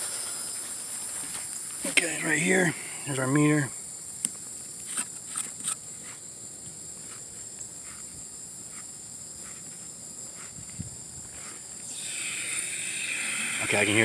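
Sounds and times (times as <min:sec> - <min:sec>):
insects chirring: 0:00.0 - 0:14.0.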